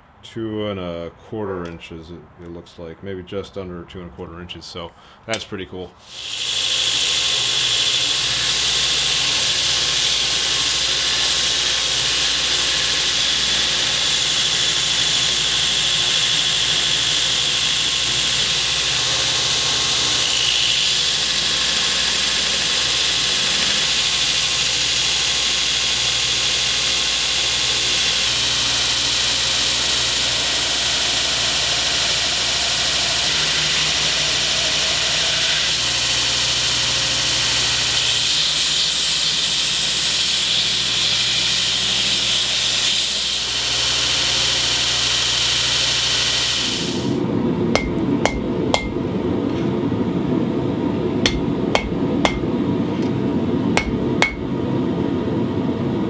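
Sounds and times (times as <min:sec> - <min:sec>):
belt grinder grinding steel: 0:06.0 - 0:47.2, 0:47.8 - 0:49.0, 0:51.2 - 0:52.5, 0:53.8 - 0:54.5.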